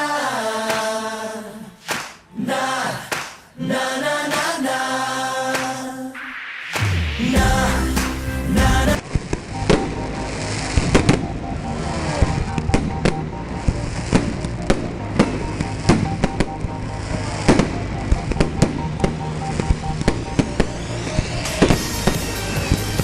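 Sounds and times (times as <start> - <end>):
music with steady tones: 6.8 - 23.0.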